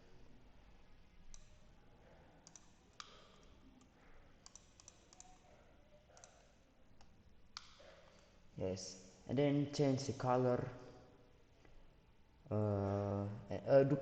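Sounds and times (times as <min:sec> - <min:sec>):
mouse and keyboard clicks: 0:02.4 - 0:05.5, 0:06.1 - 0:07.8.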